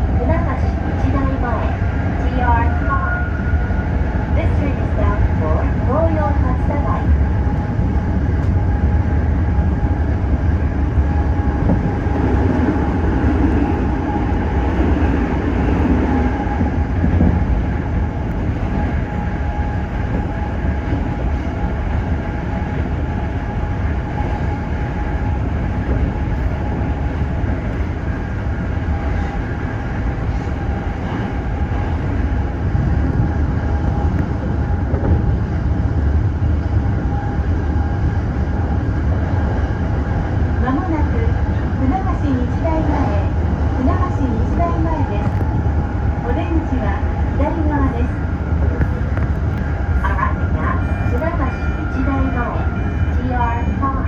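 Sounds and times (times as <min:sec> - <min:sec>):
steady humming tones: 0:00.0 - 0:54.0
train wheels rumbling on rail: 0:00.0 - 0:54.0.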